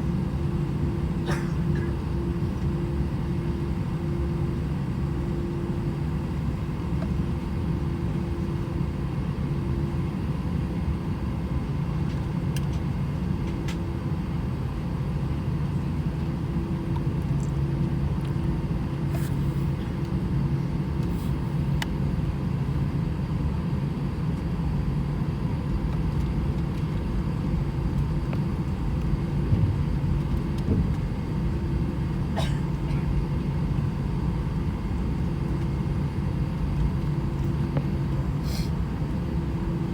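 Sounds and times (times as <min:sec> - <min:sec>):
jet engine rumble and hum: 0:00.0 - 0:39.9
light cabin clicks and rattles: 0:25.7 - 0:33.9.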